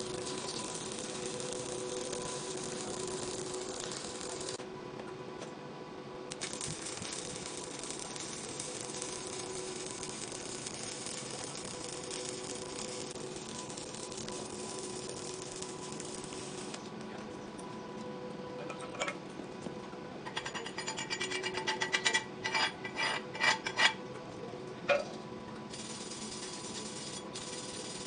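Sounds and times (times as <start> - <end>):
welding arc crackling: 0.0 - 4.6, 6.3 - 16.9, 25.7 - 28.0.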